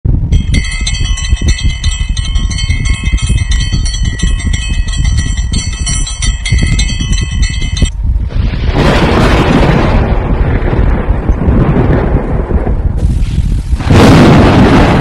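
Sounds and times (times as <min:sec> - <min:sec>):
low rumbling noise: 0:00.0 - 0:15.0
bell-like ringing tones: 0:00.3 - 0:08.0.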